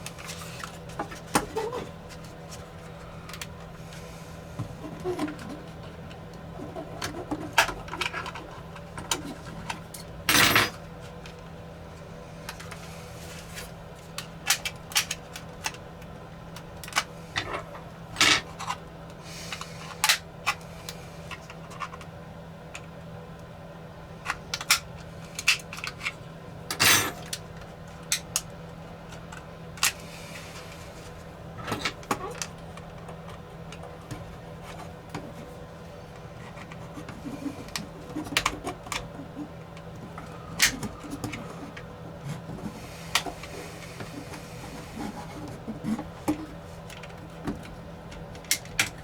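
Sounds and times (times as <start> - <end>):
steady low hum: 0.0 - 49.0.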